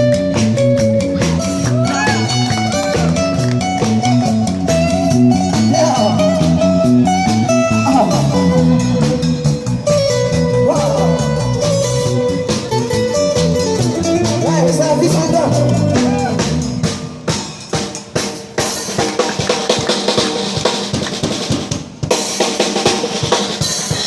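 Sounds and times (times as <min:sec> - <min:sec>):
electric guitar lead: 0:00.0 - 0:17.4
bass guitar line: 0:00.0 - 0:21.4.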